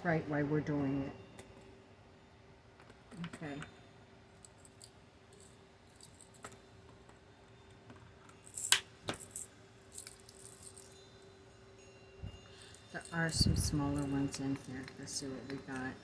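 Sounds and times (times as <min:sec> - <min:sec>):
small metal clicks and clinks: 0:04.4 - 0:11.3, 0:12.2 - 0:16.0.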